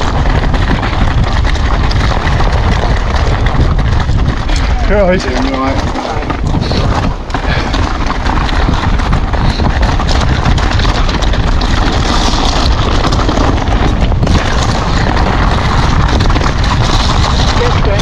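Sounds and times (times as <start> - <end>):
bike rattling over rocky ground: 0.0 - 18.0
wind buffeting microphone: 0.0 - 18.0.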